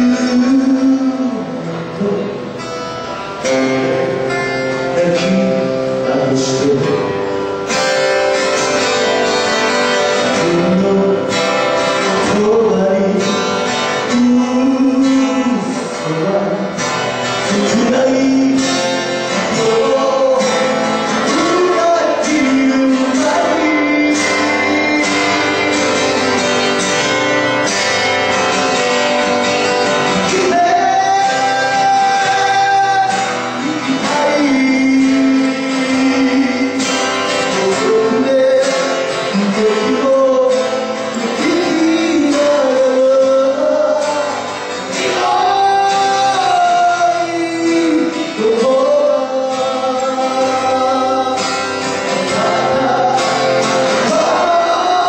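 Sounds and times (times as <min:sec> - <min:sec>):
acoustic guitar strumming: 0:00.0 - 0:55.0
person singing: 0:09.4 - 0:27.6, 0:29.6 - 0:55.0.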